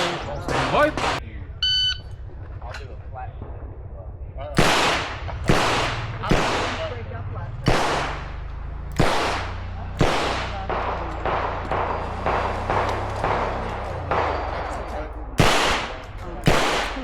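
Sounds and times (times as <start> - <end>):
handgun shots: 0.0 - 1.2, 4.6 - 7.0, 7.6 - 17.0.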